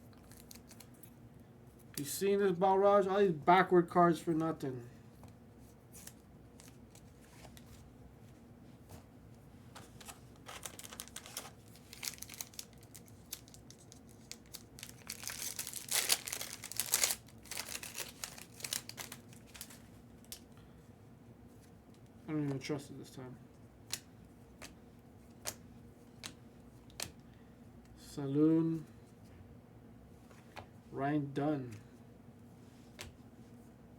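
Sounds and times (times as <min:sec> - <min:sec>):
foil wrapper crinkling and tearing: 0:00.2 - 0:00.9, 0:10.4 - 0:20.4.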